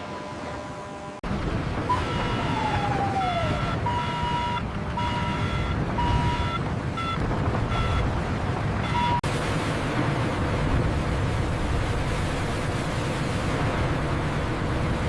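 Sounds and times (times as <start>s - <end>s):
heavy machinery rumbling: 0.0s - 15.0s
electronic warning beeps: 1.9s - 8.1s, 8.8s - 9.2s.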